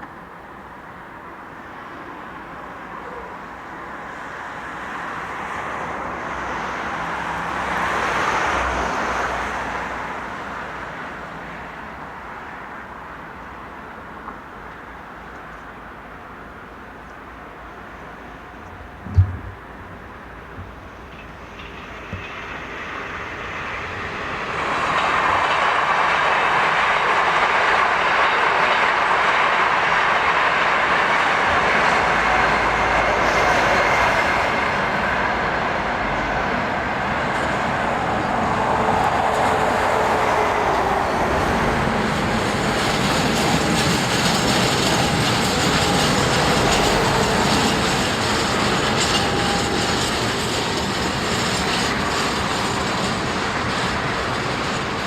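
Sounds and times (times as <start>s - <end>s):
freight train wheels on rails: 0.0s - 55.0s
faint wheel squeal: 44.7s - 53.1s.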